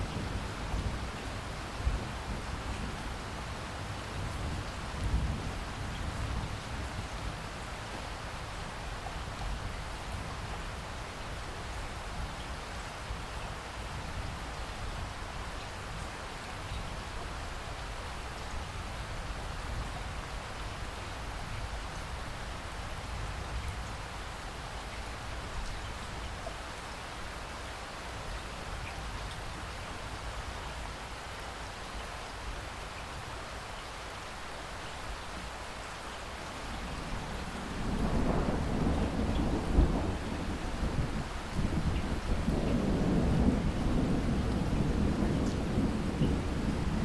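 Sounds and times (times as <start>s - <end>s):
steady rain: 0.0s - 47.0s
distant thunder rolling: 37.0s - 47.0s.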